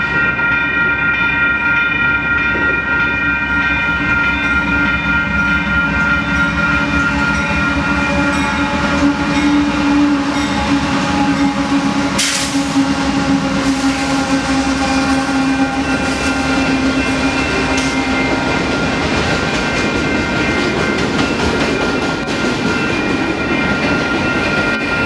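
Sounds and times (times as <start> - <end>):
freight train rumble: 0.0 - 25.0
locomotive horn chord: 5.1 - 19.3.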